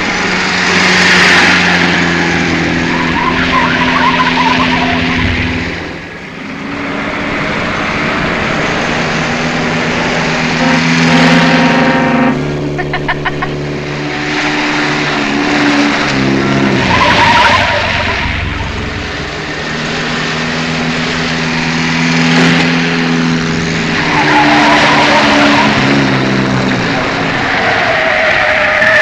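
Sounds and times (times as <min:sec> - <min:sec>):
sports car driving fast: 0:00.0 - 0:29.0
tires squealing: 0:00.0 - 0:29.0
held pitched tones: 0:01.8 - 0:06.6, 0:09.6 - 0:21.1.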